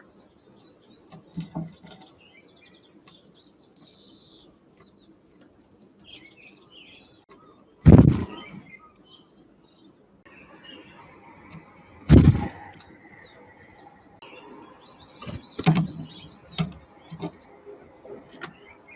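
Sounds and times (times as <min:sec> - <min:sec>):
small birds chirping: 0:00.0 - 0:18.9
wings fluttering: 0:07.8 - 0:08.6, 0:11.4 - 0:13.0, 0:15.2 - 0:18.6.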